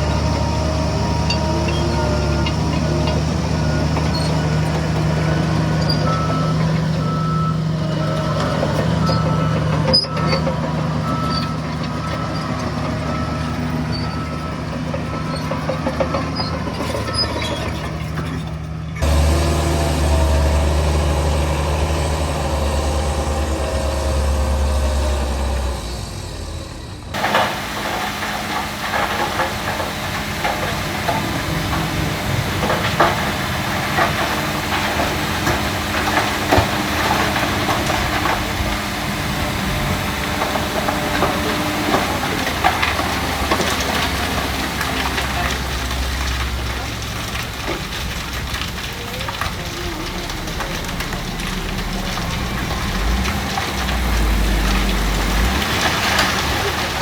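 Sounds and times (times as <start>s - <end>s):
heavy diesel engines running: 0.0s - 57.0s
reversing alarm beeping: 5.2s - 15.5s
rattling clatter: 27.2s - 57.0s.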